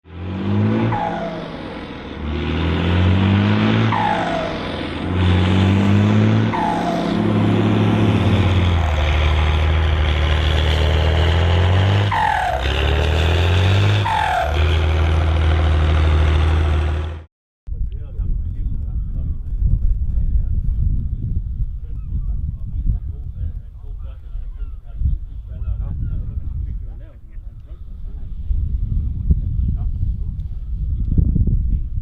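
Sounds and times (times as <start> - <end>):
tractor diesel engine under load: 0.1 - 17.3
falling turbo whistle: 0.7 - 2.0, 3.4 - 9.0, 11.9 - 15.5.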